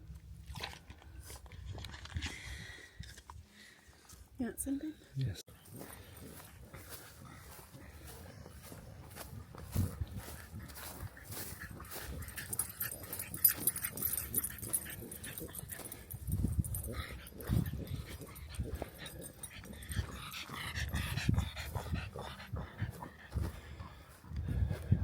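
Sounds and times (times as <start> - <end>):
dog making small noises: 8.2 - 24.1.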